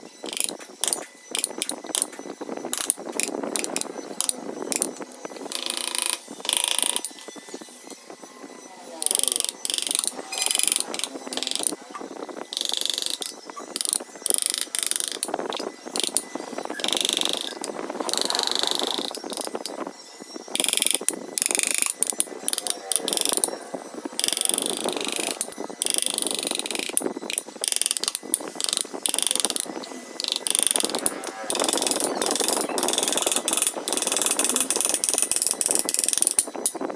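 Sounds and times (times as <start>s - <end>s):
carving tools rasping wood: 0.0s - 8.0s, 8.9s - 19.8s, 20.5s - 36.7s.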